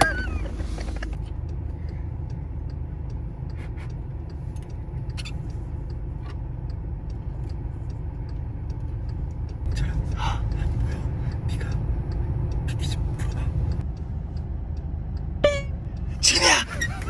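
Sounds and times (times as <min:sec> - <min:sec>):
low rumble: 0:00.0 - 0:17.0.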